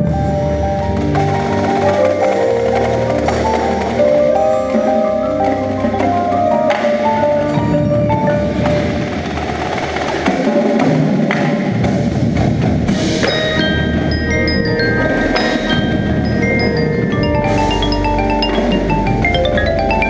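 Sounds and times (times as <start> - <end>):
xylophone and glockenspiel runs: 12.9 - 20.0.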